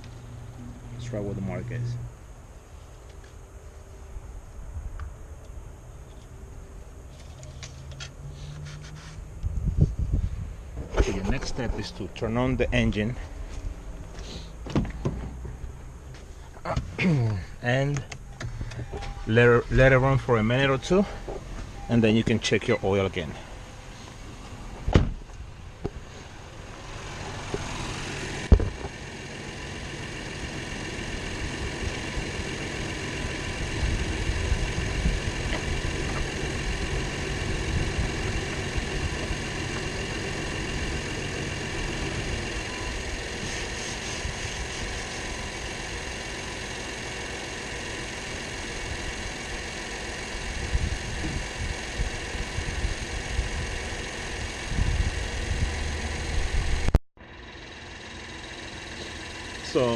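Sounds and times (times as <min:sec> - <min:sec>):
low rumbling: 0:09.1 - 0:28.8
car engine idling: 0:10.2 - 0:59.9.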